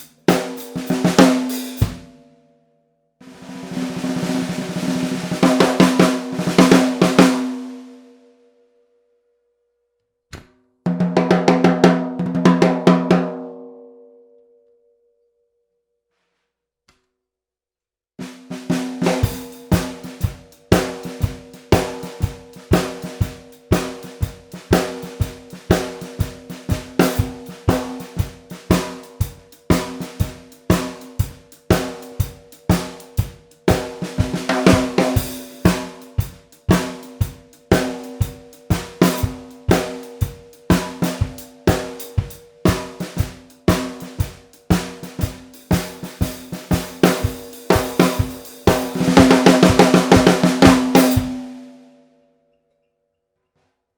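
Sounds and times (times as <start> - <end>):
snare drum strikes: 0.0 - 2.1, 3.3 - 7.8, 33.7 - 40.0, 40.7 - 51.6.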